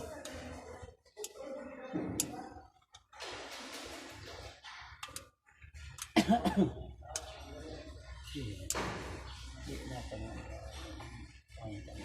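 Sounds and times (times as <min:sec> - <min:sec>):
person coughing raspily: 0:06.1 - 0:06.8.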